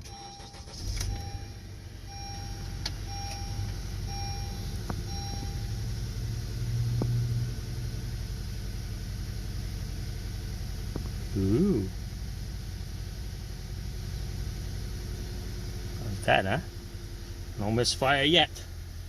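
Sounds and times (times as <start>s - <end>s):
dashboard warning chime beeping: 0.0s - 5.9s
car engine idling: 0.0s - 19.0s.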